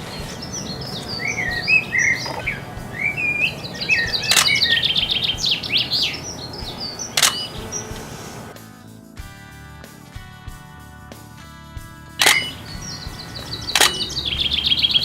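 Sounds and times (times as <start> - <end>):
birds singing: 0.0 - 8.5, 12.2 - 15.0
sharp clicks: 0.3 - 8.5, 12.2 - 14.6.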